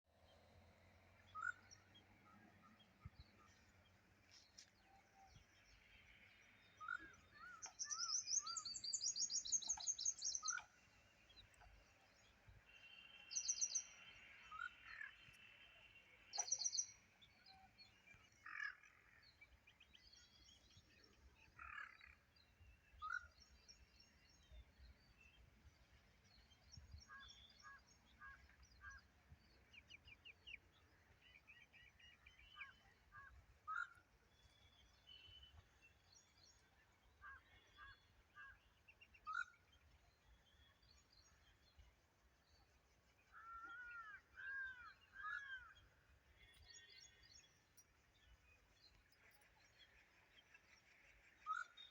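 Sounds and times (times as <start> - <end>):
faint outdoor background noise: 0.0 - 51.9
birds calling and chirping: 1.2 - 12.6, 16.2 - 24.6.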